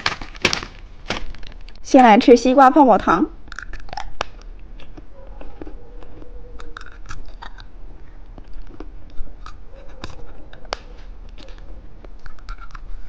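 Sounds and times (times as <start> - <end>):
chewing gum wet smacks: 3.5 - 12.8.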